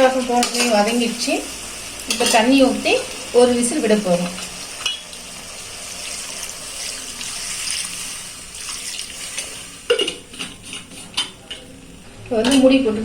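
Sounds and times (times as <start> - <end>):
water pouring into a pot: 2.8 - 9.9.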